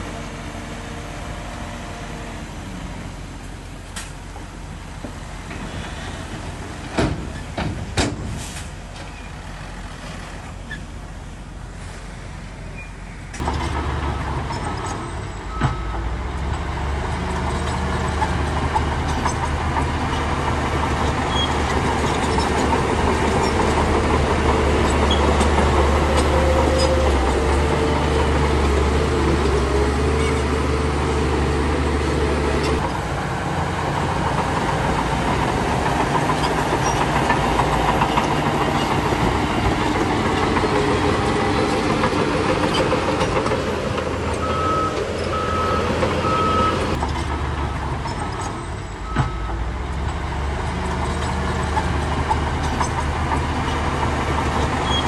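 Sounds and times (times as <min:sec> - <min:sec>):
bulldozer diesel engine drone: 0:00.0 - 0:55.0
reversing alarm beeping: 0:44.4 - 0:46.8.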